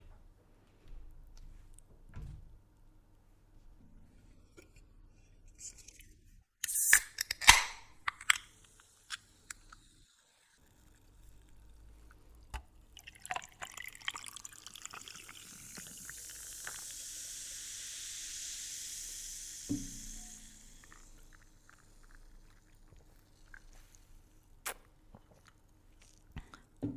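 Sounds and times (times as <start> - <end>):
liquid being poured: 6.6 - 24.3.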